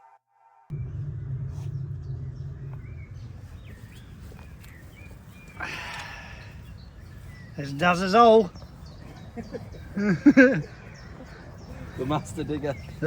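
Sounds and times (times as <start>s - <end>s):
low rumble: 0.7s - 7.5s
small birds chirping: 1.6s - 13.0s
loud bird call: 2.8s - 13.0s.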